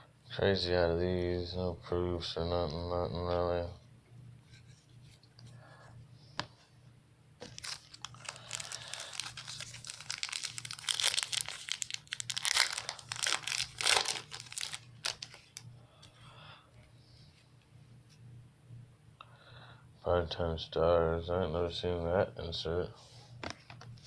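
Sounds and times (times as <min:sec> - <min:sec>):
card pack wrapper crinkling: 0:07.4 - 0:15.7.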